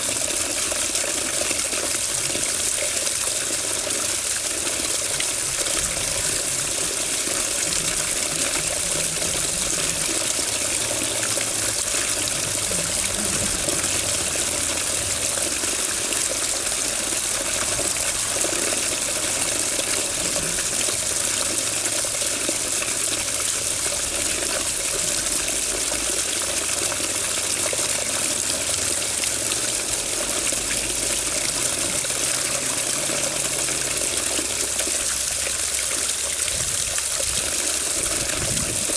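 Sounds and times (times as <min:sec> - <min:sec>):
water running steadily: 0:00.0 - 0:38.9.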